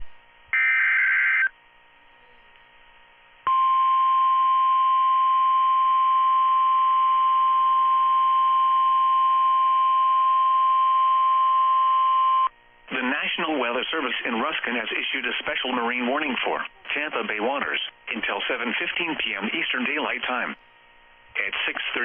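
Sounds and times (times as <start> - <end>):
steady single-pitch warning tone: 0.0 - 2.5, 3.4 - 12.7.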